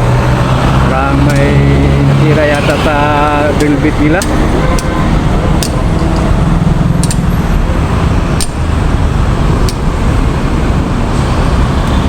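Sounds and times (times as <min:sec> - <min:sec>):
diesel engine low rumble: 0:00.0 - 0:12.0
sharp clicks: 0:01.2 - 0:01.6, 0:02.4 - 0:05.0, 0:06.9 - 0:07.3, 0:08.4 - 0:08.7, 0:09.6 - 0:09.9.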